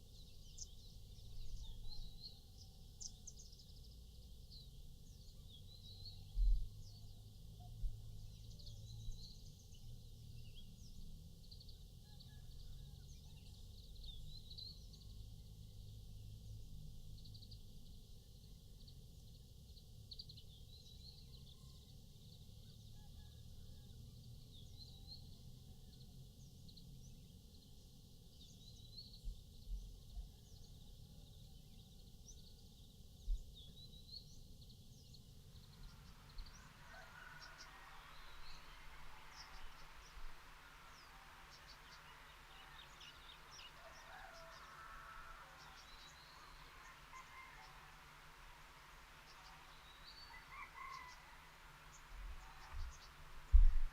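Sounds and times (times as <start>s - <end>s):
birds chirping: 35.0s - 53.9s.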